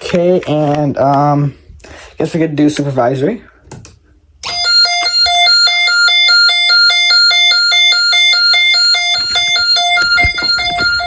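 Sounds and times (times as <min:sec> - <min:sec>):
two-pitch electronic alarm tone: 0:04.4 - 0:11.0.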